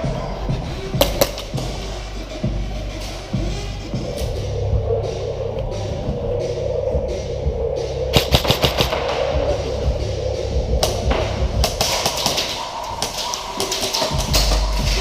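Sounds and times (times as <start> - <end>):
background music: 0.0 - 15.0
airsoft rifle shots: 8.1 - 9.4.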